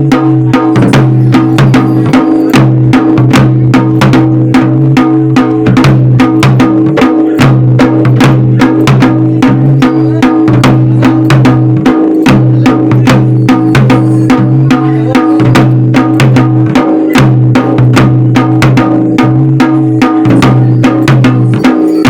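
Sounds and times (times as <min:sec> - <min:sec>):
fast steady drumming: 0:00.0 - 0:22.0
held low tone: 0:00.5 - 0:04.1, 0:08.6 - 0:17.9, 0:19.2 - 0:22.0.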